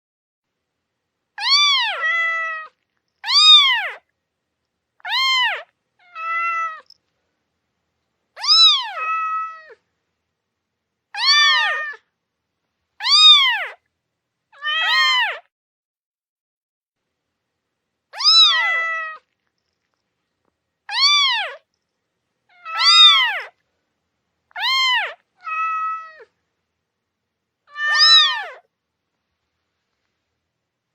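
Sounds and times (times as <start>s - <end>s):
kittens meowing: 1.4s - 4.0s, 5.0s - 7.0s, 8.4s - 9.8s, 11.2s - 12.0s, 13.0s - 13.8s, 14.6s - 15.5s, 18.2s - 19.2s, 20.9s - 21.6s, 22.5s - 23.6s, 24.5s - 26.3s, 27.7s - 28.7s.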